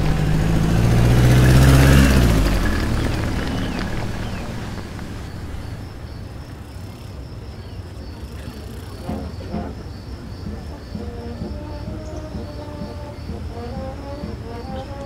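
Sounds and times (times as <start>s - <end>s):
low rumble: 0.0s - 6.6s
insects trilling: 0.0s - 15.0s
faint music: 1.7s - 15.0s.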